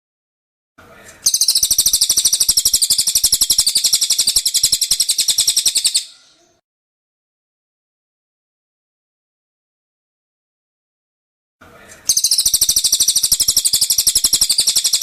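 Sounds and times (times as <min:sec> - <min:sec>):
bird rapid high trill: 0:01.2 - 0:06.4, 0:12.1 - 0:15.0.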